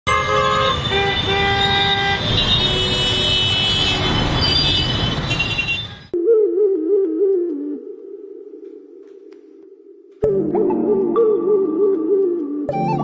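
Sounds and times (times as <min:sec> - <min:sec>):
heavy road traffic: 0:00.0 - 0:06.2
vehicle horns honking: 0:00.1 - 0:06.1
soft melody: 0:10.2 - 0:13.0.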